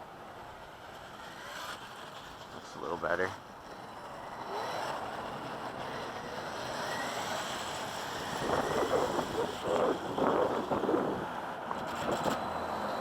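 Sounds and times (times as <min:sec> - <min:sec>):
rc buggy driving on dirt: 0:00.0 - 0:13.0
wind on microphone: 0:08.1 - 0:12.3.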